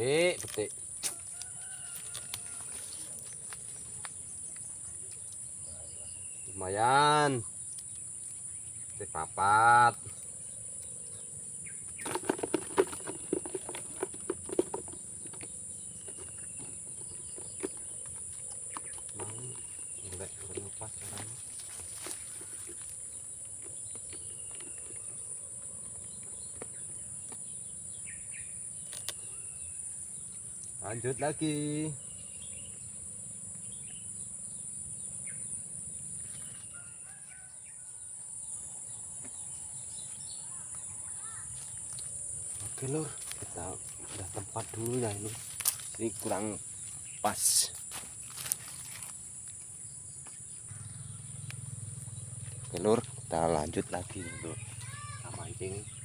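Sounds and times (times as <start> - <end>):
bird calls: 0.0 - 49.1, 50.0 - 56.0
crickets and insects chirring: 0.0 - 56.0
rooster crowing: 1.0 - 3.2, 36.7 - 38.2.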